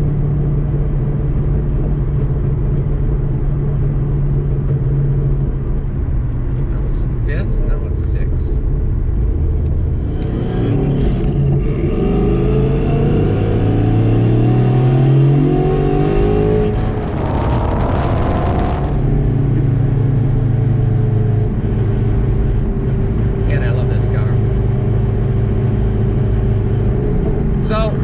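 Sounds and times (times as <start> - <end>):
car engine accelerating: 0.0 - 28.0
loud rushing noise: 15.9 - 19.4.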